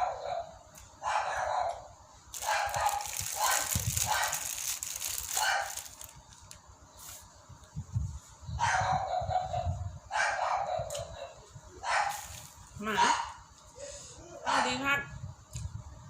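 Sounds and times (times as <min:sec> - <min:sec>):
dog barking: 0:00.0 - 0:04.4, 0:05.4 - 0:05.8, 0:08.6 - 0:12.3, 0:12.9 - 0:13.4, 0:14.4 - 0:14.8.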